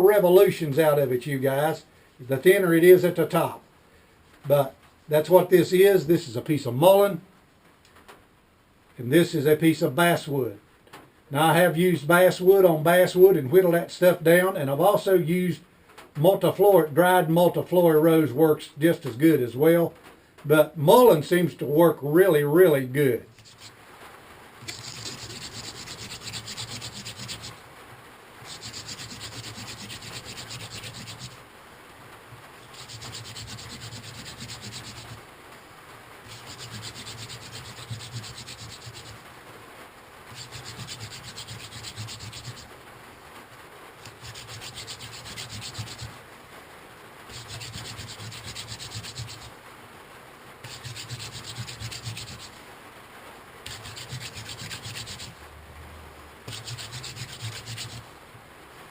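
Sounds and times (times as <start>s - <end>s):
wood rasping on wood: 23.4s - 23.7s, 24.6s - 27.6s, 28.4s - 31.4s, 32.6s - 35.2s, 36.2s - 39.2s, 40.3s - 42.7s, 44.0s - 46.2s, 47.3s - 49.5s, 50.6s - 52.6s, 53.7s - 55.4s, 56.5s - 58.1s.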